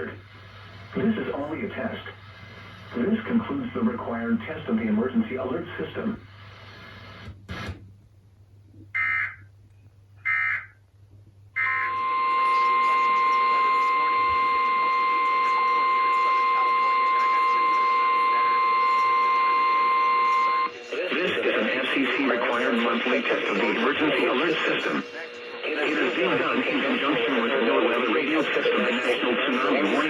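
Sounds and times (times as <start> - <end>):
steady single-pitch alert tone: 11.6 - 20.7.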